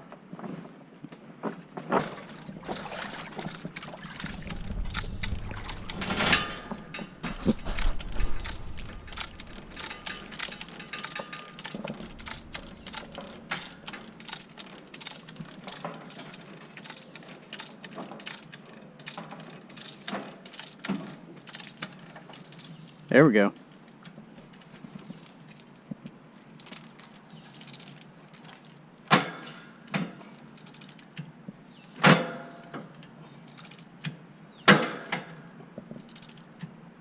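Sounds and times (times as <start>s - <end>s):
scraping: 1.8s - 16.7s
low rumble: 4.1s - 10.8s, 11.8s - 13.4s.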